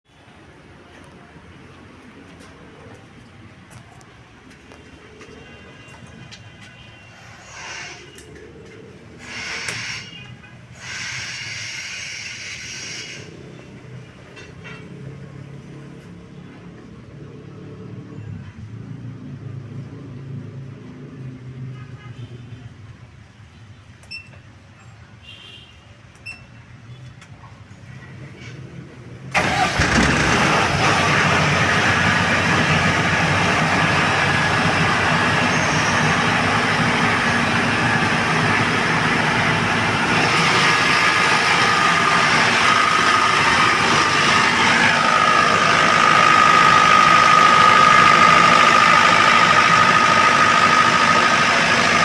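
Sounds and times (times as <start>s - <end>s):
hissing bursts: 10.8s - 13.3s
generator engine humming: 29.4s - 52.0s.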